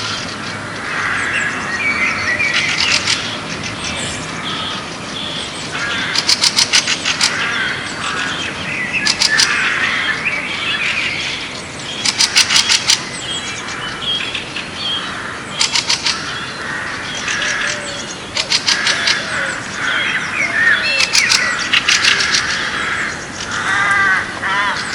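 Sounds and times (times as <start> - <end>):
birds chirping and calling: 0.0 - 24.9
fast run of sharp bird notes: 0.0 - 24.9.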